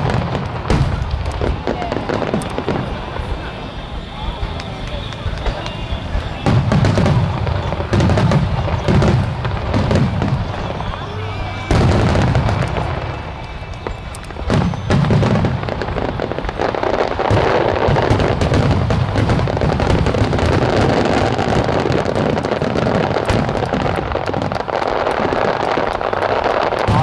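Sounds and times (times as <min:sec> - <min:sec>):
fireworks bursting and crackling: 0:00.0 - 0:27.0.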